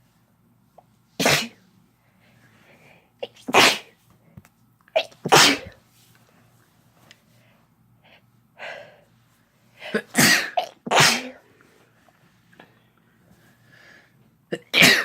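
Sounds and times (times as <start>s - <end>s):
person sneezing: 1.2s - 1.6s, 3.2s - 4.0s, 5.0s - 5.8s, 9.8s - 11.4s, 14.6s - 15.0s.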